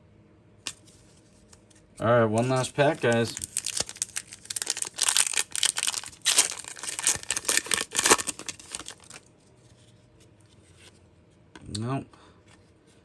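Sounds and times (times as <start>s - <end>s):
foil wrapper crinkling: 2.4s - 9.3s.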